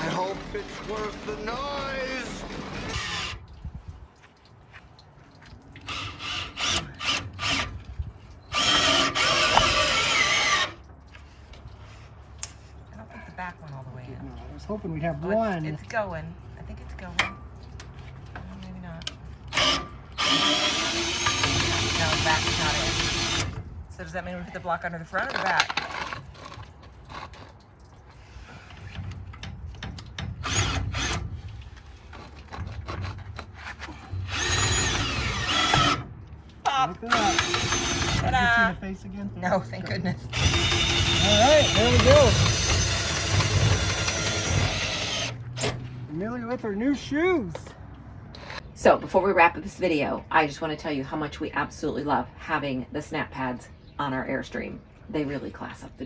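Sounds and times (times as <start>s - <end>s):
cordless power drill: 0.0s - 3.4s, 5.8s - 7.8s, 8.5s - 10.8s, 19.5s - 23.6s, 30.4s - 31.3s, 34.1s - 36.1s, 37.1s - 38.4s, 40.3s - 45.7s.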